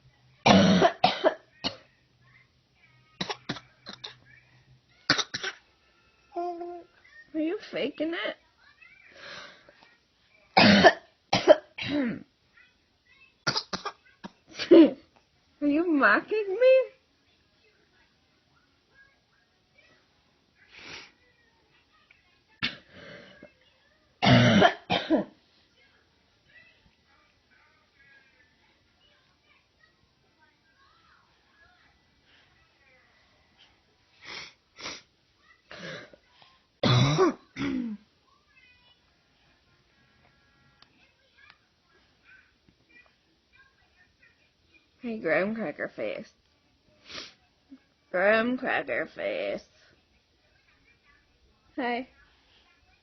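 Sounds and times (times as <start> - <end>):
short harsh coughs: 0.5 - 1.8, 10.6 - 12.0, 13.5 - 14.4, 24.2 - 25.3, 36.8 - 38.0.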